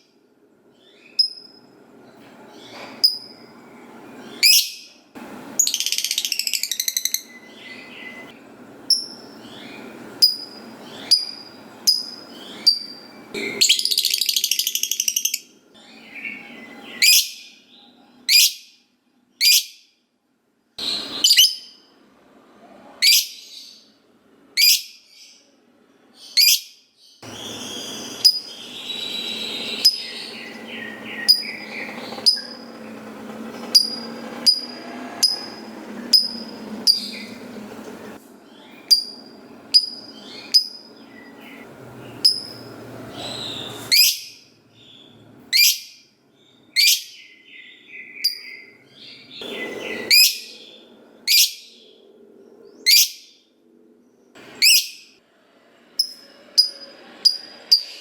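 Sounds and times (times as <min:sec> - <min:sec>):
bird rapid chattering: 0:05.6 - 0:07.3, 0:27.2 - 0:37.4
bird shrill chirps: 0:08.9 - 0:17.6, 0:26.3 - 0:32.8, 0:38.6 - 0:41.6, 0:54.6 - 0:55.2.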